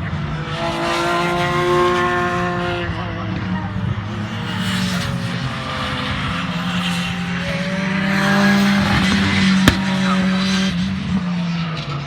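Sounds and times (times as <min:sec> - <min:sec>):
race car engine: 0:06.2 - 0:10.0.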